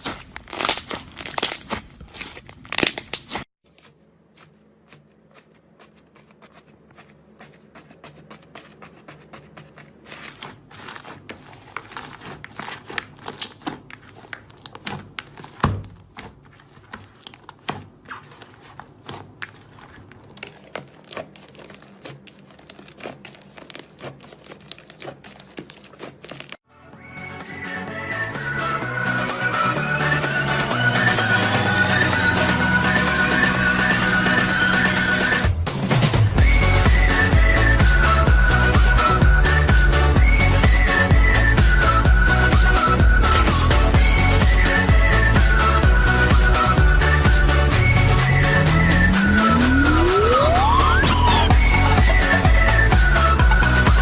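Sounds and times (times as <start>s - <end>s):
slime squeezed crackling and popping: 0.0s - 3.4s, 17.0s - 26.6s.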